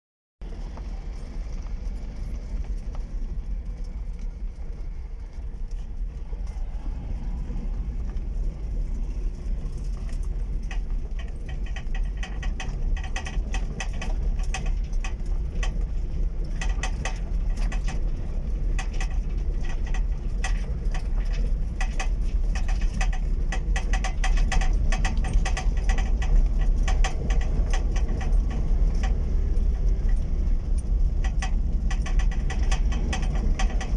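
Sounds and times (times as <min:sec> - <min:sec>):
car engine and road rumble: 0:00.4 - 0:33.9
car clattering rattle: 0:09.6 - 0:33.9.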